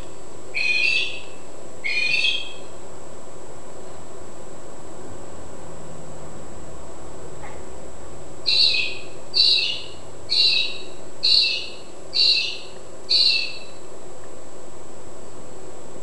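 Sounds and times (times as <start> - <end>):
bird calling loudly: 0.6 - 2.7, 8.5 - 13.8.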